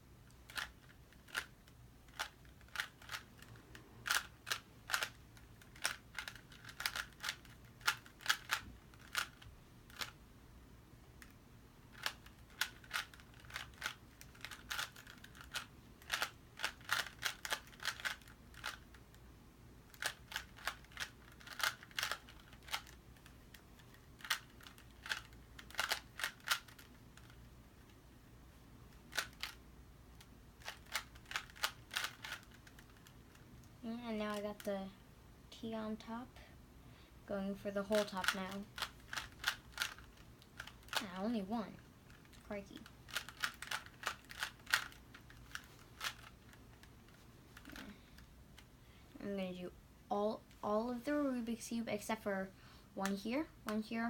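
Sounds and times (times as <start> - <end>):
puzzle cube layers clicking: 0.3 - 10.2, 11.2 - 19.1, 19.9 - 28.0, 28.9 - 29.6, 30.2 - 34.7, 37.9 - 48.7.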